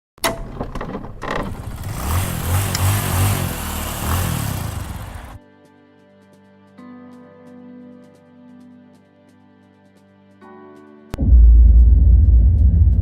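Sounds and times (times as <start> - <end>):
engine revving loudly: 1.4 - 5.4
quiet music with sustained notes: 5.0 - 11.2.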